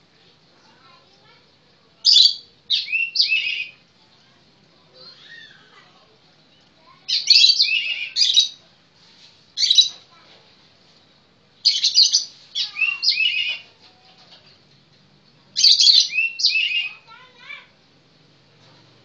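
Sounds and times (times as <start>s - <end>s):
bird singing whistled phrases: 2.1s - 3.8s, 7.2s - 8.6s, 11.8s - 13.6s, 15.6s - 17.0s.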